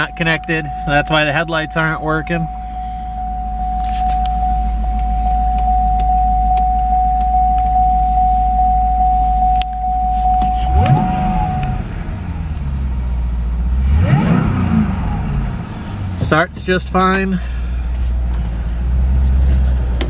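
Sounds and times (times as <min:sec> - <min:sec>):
pulsing warning chime: 0:00.0 - 0:12.0
car engine idling and revving: 0:00.0 - 0:20.0.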